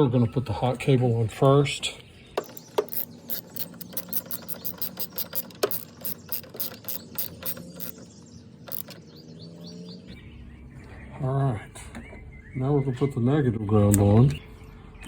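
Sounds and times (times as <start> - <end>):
ratchet wrench clicking: 2.4 - 9.0.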